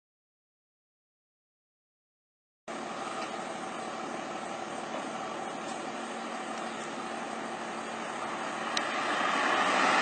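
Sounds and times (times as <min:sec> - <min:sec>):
engine droning through exhaust: 0:02.7 - 0:10.0.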